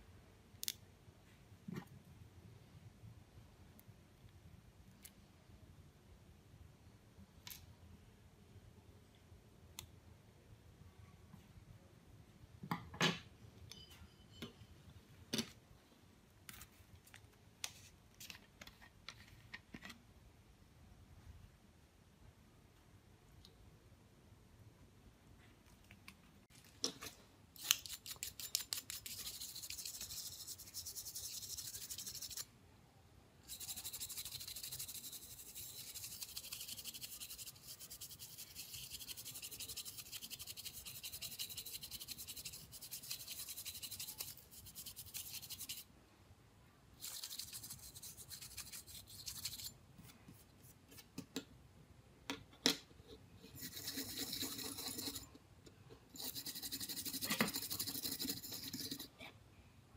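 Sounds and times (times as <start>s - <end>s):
hissy rubbing on small hard object: 27.6s - 32.5s, 33.5s - 45.9s, 47.0s - 49.8s, 53.4s - 55.3s, 56.1s - 59.2s.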